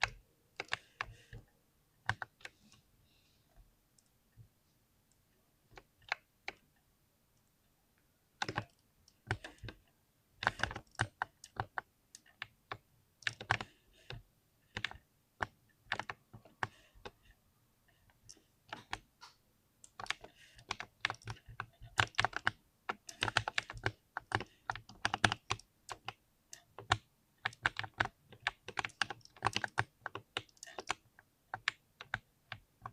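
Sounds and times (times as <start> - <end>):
mechanical keyboard typing: 8.4 - 9.8, 10.4 - 16.7, 19.8 - 32.9.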